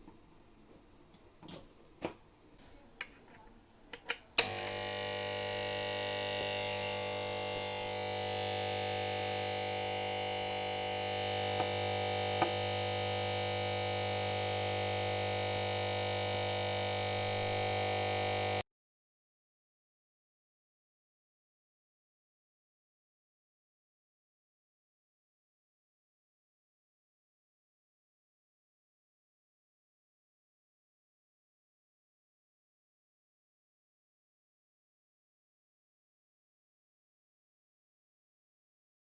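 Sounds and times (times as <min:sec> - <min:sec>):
switch click: 0:04.0 - 0:04.7
transformer humming and buzzing: 0:04.4 - 0:18.6.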